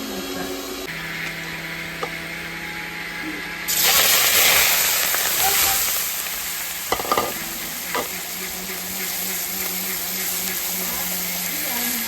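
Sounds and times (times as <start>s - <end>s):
food sizzling in oil: 3.7s - 12.0s
utensil knocking against pan: 6.9s - 8.1s.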